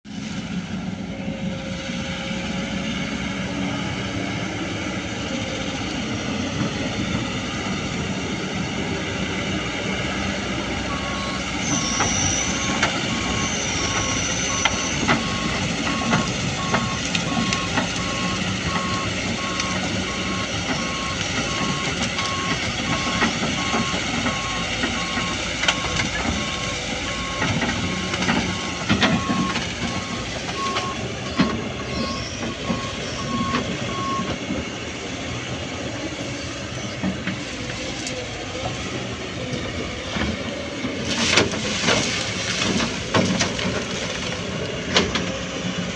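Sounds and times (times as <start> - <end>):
excavator engine running: 0.1 - 45.9
travel alarm beeping: 10.6 - 35.6.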